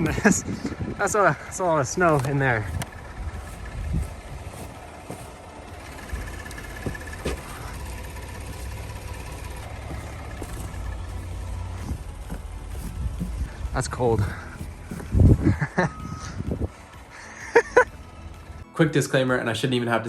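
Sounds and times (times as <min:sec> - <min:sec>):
car engine rumbling: 0:01.8 - 0:15.4.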